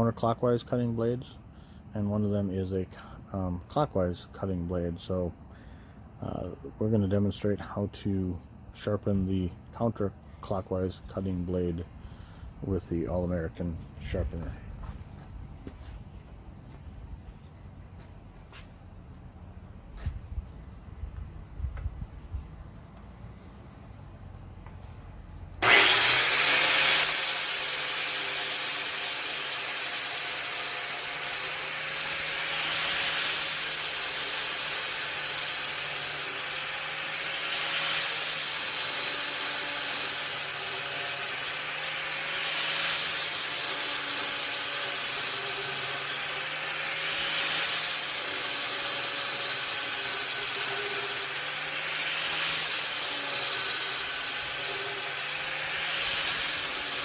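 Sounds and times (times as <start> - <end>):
motor whine: 25.6 - 29.4
angle grinder grinding steel blade: 25.6 - 57.0.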